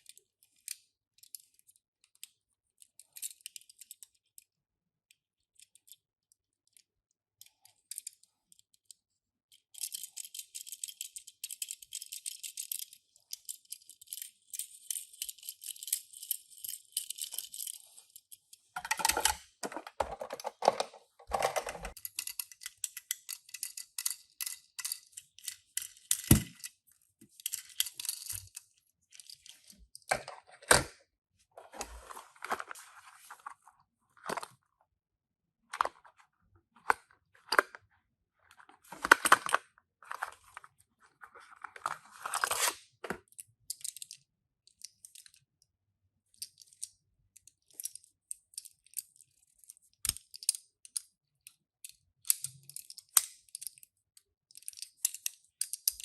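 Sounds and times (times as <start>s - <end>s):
toy cars rattling and clicking: 6.7s - 26.7s, 27.3s - 29.7s, 46.3s - 51.1s, 51.8s - 53.9s, 54.5s - 56.0s.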